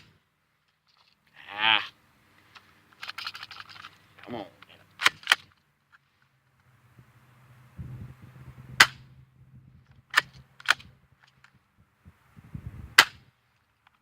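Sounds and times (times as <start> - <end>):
spring pistol snapping: 5.0 - 5.6, 10.1 - 11.6.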